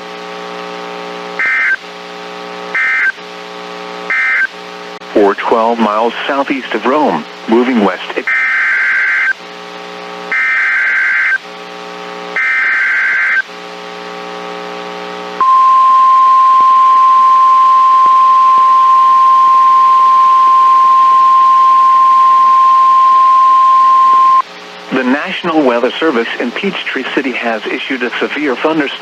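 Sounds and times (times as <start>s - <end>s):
low buzz: 15.4s - 24.4s
steady warning alarm tone: 15.4s - 24.4s.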